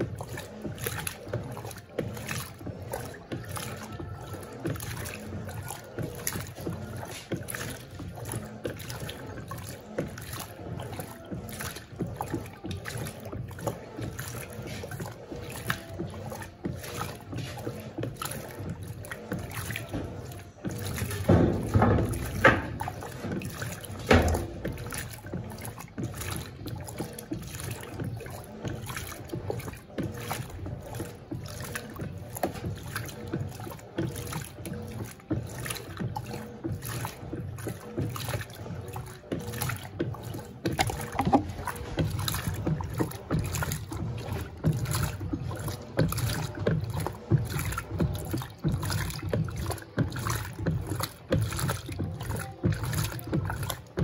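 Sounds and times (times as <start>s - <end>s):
water sloshing in washing machine: 0.0s - 54.0s
washing machine knocks: 20.8s - 25.0s, 40.7s - 43.6s
low motor rumble: 32.7s - 53.8s.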